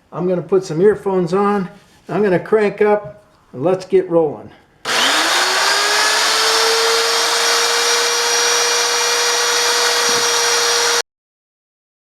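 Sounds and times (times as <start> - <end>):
grinder motor whining: 4.9 - 11.0.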